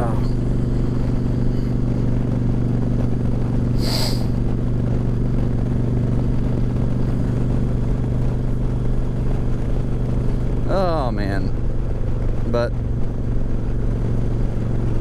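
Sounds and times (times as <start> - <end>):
motorcycle engine cruising: 0.0 - 15.0
high-pitched hiss: 3.8 - 4.3.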